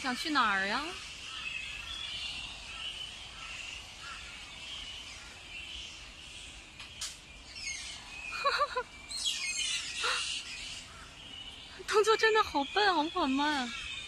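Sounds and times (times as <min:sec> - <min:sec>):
bats chattering and squealing: 0:07.0 - 0:14.0.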